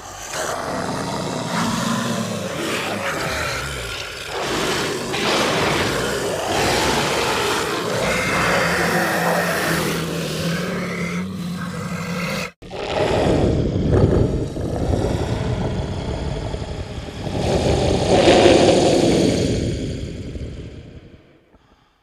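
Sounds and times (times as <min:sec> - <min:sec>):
rough creature roar: 0:00.0 - 0:21.5
droning monster growl: 0:00.0 - 0:21.9.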